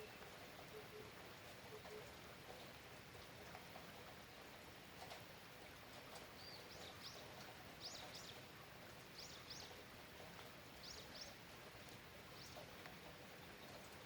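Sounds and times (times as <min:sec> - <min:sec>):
faint steady rain: 0:00.0 - 0:14.0
small bird chirping: 0:06.2 - 0:08.5, 0:09.1 - 0:09.9, 0:10.8 - 0:11.4, 0:12.3 - 0:12.8.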